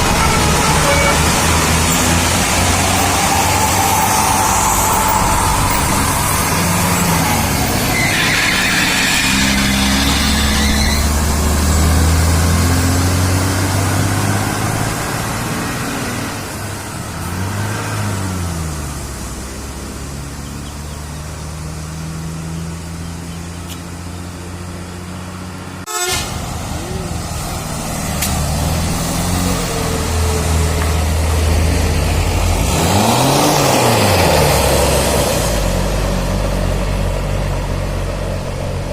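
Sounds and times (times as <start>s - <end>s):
multi-tone bus horns tooting: 0.0s - 3.4s, 7.8s - 11.4s, 25.8s - 27.2s
bus diesel engines passing: 0.0s - 38.9s.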